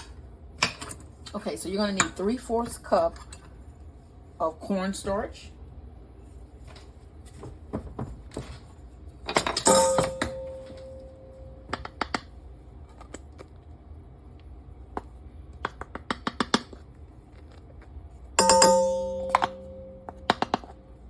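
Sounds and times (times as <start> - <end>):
kitchen utensils clinking: 9.3 - 11.5, 18.4 - 20.6.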